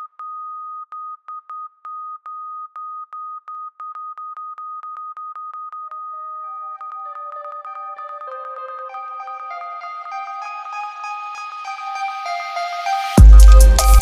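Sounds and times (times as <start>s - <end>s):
synthesizer notes: 7.1s - 14.0s.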